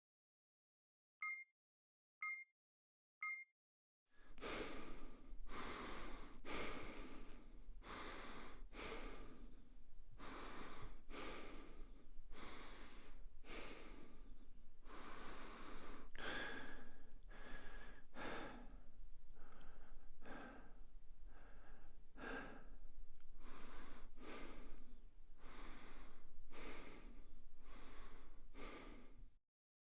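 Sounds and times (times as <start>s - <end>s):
short beeps: 1.2s - 1.5s, 2.2s - 2.5s, 3.2s - 3.5s
person breathing through nose: 4.2s - 18.8s, 23.4s - 29.4s.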